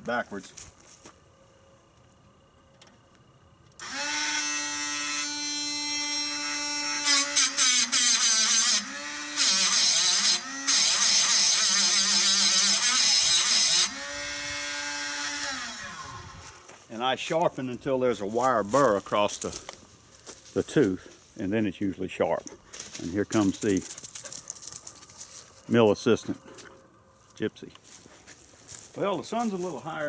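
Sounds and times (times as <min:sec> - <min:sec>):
power tool motor whining: 0:03.8 - 0:16.7.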